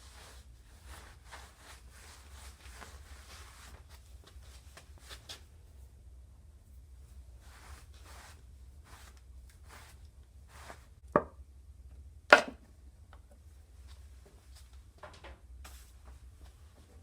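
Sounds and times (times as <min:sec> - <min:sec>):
brushing and scraping: 0:00.0 - 0:05.5, 0:07.0 - 0:11.0.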